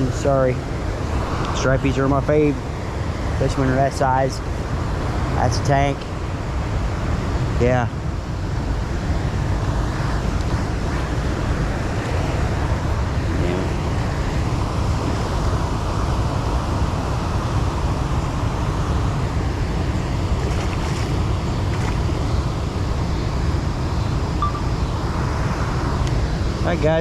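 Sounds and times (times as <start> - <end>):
wind rumble on microphone: 0.0 - 27.0
water rushing through spillway: 12.0 - 23.8.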